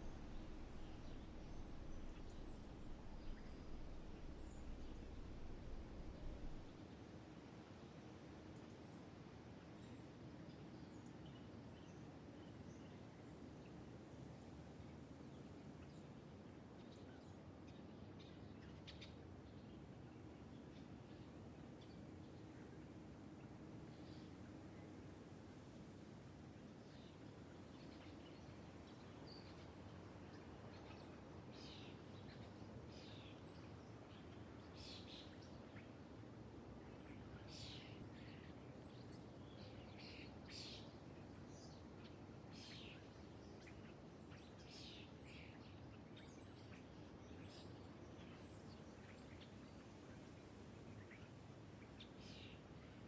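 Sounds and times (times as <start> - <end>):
birds chirping faintly: 0.0 - 6.8
steady low hiss: 0.0 - 10.4, 12.1 - 53.0.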